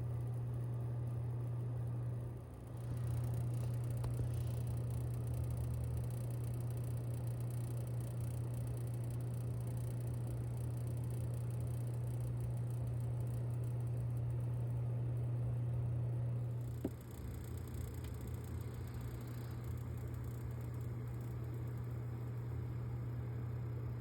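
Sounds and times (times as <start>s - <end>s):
power supply buzzing: 0.0s - 24.0s.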